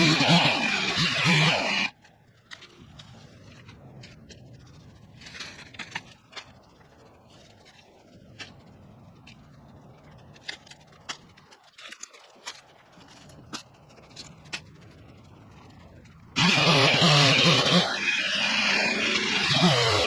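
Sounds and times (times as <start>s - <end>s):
faint clicks and scrapes: 1.8s - 16.4s.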